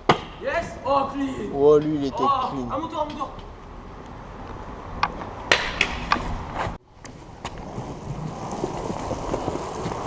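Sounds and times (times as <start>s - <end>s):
wheels rolling on wet pavement: 6.1s - 10.0s.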